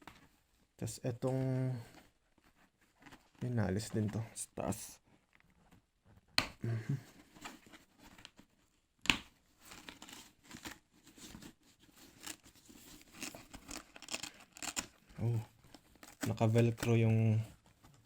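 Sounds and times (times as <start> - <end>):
hook-and-loop fastener tearing: 12.1 - 15.0.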